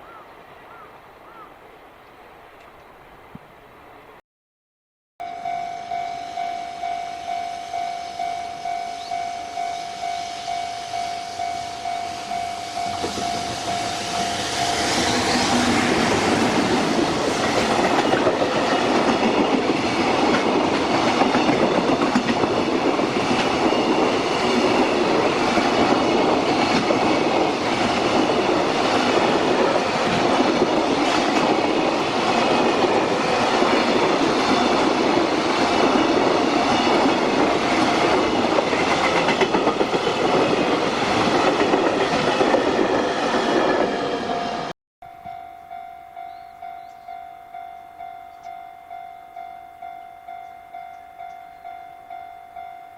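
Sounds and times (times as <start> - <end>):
level crossing bell ringing: 5.2 - 14.8, 45.0 - 52.9
train wheels clattering: 14.8 - 44.2.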